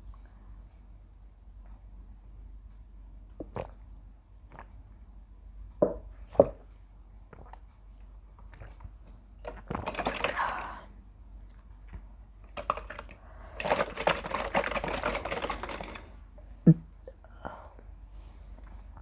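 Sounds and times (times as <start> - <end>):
person gulping juice: 3.4 - 4.9, 5.8 - 17.4.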